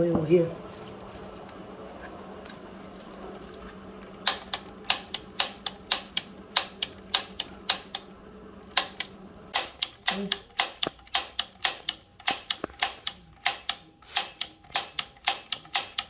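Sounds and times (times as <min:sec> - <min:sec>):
low steady hum: 0:00.0 - 0:16.0
igniter button clicks: 0:04.2 - 0:08.1.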